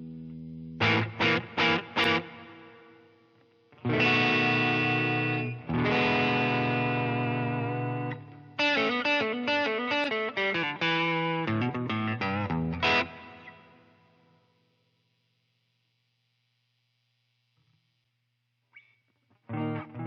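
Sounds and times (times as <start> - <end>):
distorted electric guitar chords: 0.0 - 13.9, 19.4 - 20.0.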